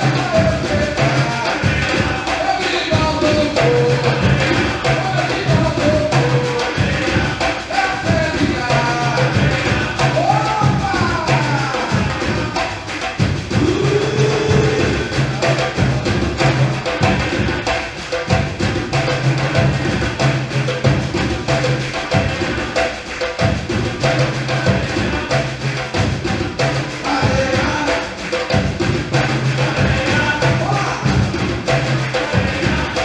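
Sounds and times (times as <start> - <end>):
bass drum: 0.0 - 33.0
sharp stick and hand drum strokes: 0.0 - 33.0.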